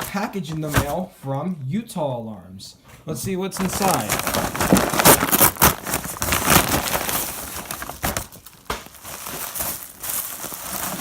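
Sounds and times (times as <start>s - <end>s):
packing material rustling: 3.5s - 11.0s.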